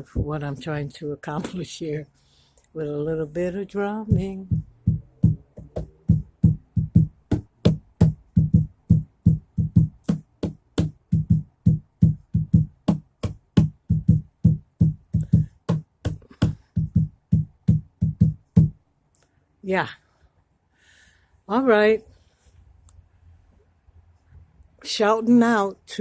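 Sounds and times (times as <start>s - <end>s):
hands drumming on a bench: 4.1s - 18.8s.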